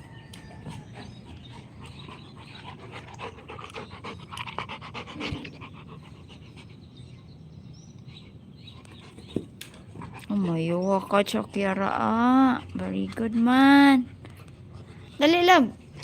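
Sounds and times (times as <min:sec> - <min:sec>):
dog panting: 0:00.3 - 0:07.3.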